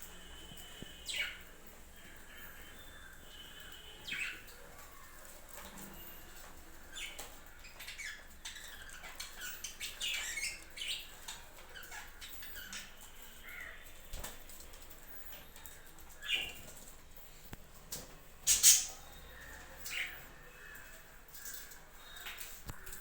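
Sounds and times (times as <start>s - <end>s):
budgerigars chirping: 0.7s - 1.4s, 7.0s - 13.7s, 18.4s - 20.8s.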